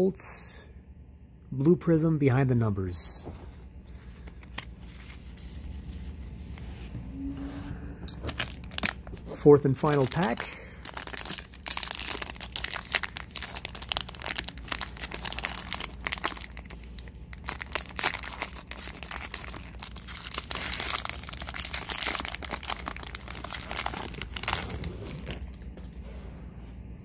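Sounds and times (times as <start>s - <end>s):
card pack wrapper crinkling: 8.1s - 25.8s.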